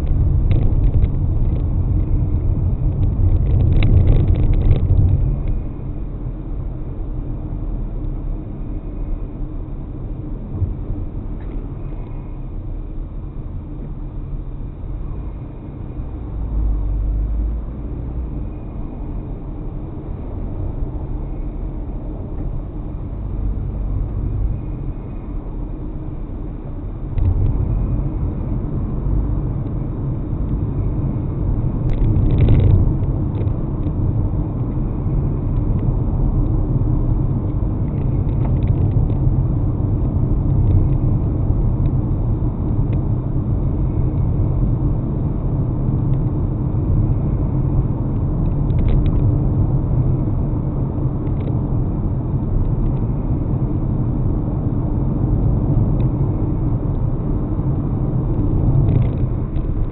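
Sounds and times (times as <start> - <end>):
car driving rumble: 0.0 - 59.9.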